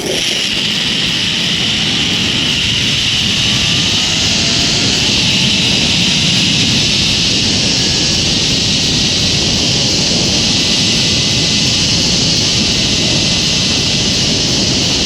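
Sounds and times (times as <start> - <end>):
faint rising whine: 0.0 - 15.0
wind rushing: 0.0 - 15.0
zip line trolley whirring: 0.0 - 15.0.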